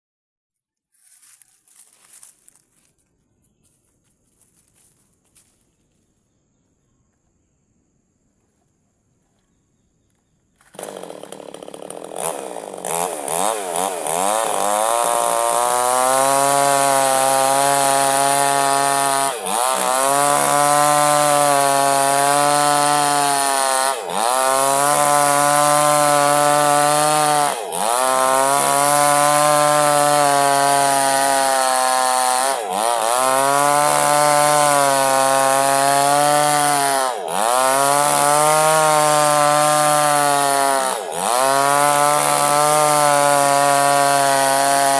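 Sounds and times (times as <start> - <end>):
chainsaw cutting log: 10.6 - 44.9.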